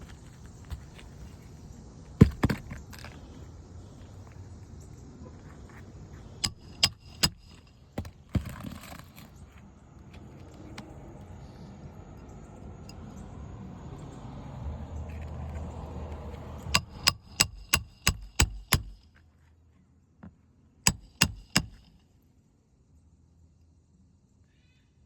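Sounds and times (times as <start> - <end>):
hammer striking metal tool: 6.4 - 7.7, 16.6 - 19.0, 20.9 - 21.9.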